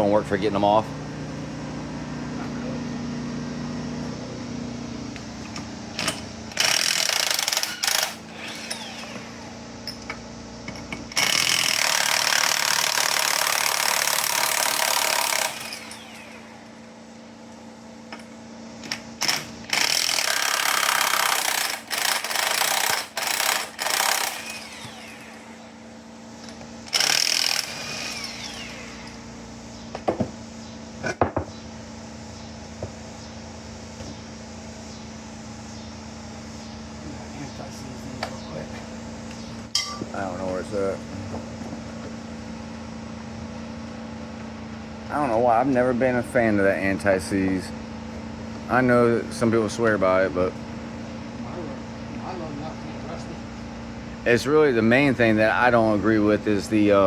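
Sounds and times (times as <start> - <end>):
power tool running: 0.4 - 31.2
steady low hum: 21.4 - 57.0.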